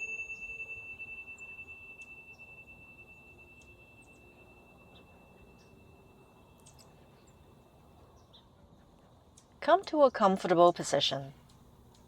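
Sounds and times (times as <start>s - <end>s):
metal chime ringing: 0.0s - 8.0s
faint high chirps: 0.0s - 8.5s.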